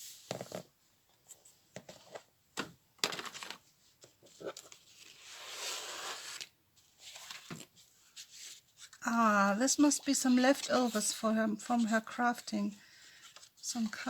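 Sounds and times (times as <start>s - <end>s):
paper rustling and tapping: 1.7s - 4.8s.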